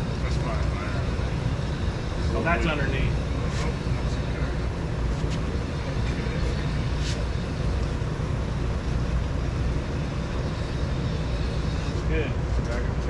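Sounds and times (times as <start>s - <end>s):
compressed air equipment hiss: 3.3s - 8.7s.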